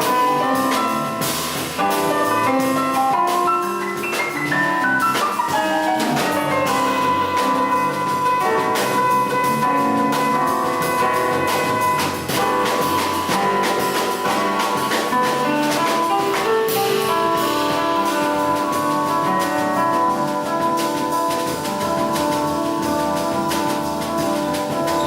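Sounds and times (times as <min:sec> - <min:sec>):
bass: 0:00.0 - 0:25.0
drum kit with cymbal strokes: 0:00.0 - 0:25.0
jazz piano: 0:00.0 - 0:25.0.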